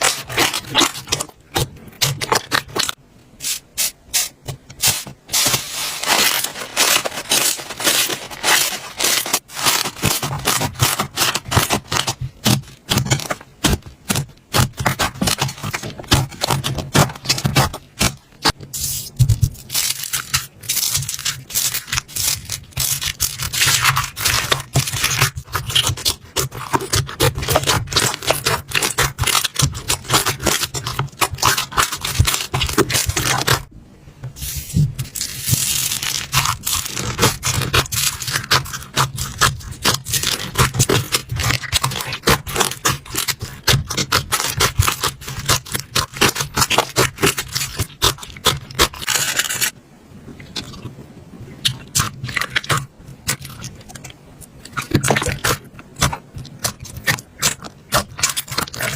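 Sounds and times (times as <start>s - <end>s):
slime crackling and popping: 0.0s - 3.0s, 19.2s - 33.7s, 35.0s - 49.8s, 54.7s - 58.9s.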